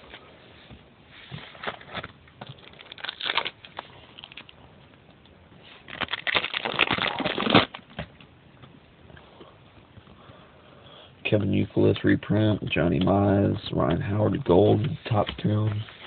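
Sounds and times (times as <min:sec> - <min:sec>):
card wrappers rustling and crackling: 0:01.3 - 0:04.6, 0:05.6 - 0:08.1.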